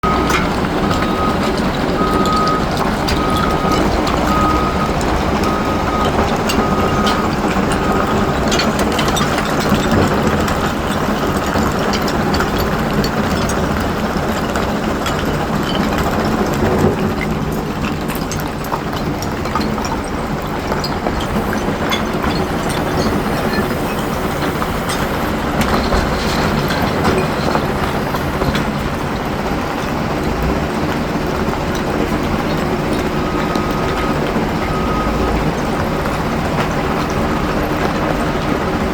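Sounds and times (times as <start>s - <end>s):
reversing alarm beeping: 0.0s - 9.2s, 21.1s - 29.2s, 32.7s - 36.3s
diesel engine running: 0.0s - 38.9s
metallic clicks and clanks: 0.1s - 29.4s.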